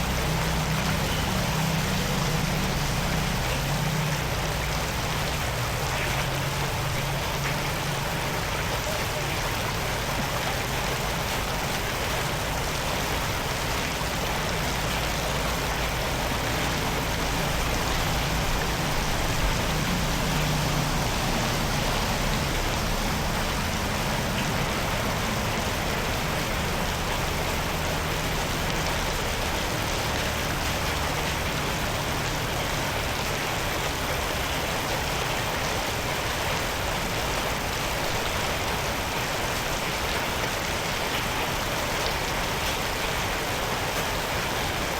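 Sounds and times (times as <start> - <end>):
running water: 0.0 - 44.9
low engine hum: 14.1 - 34.6.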